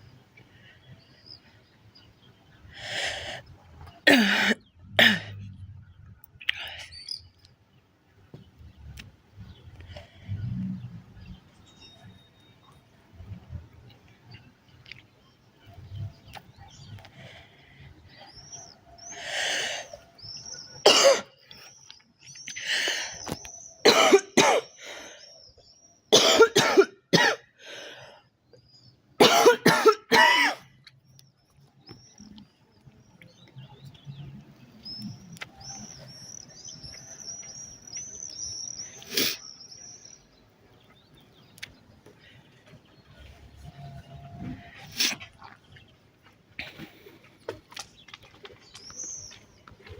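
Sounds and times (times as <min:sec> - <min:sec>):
girl coughing: 0:04.1 - 0:05.3, 0:20.8 - 0:21.3, 0:23.8 - 0:24.7, 0:26.2 - 0:27.4, 0:29.2 - 0:30.6.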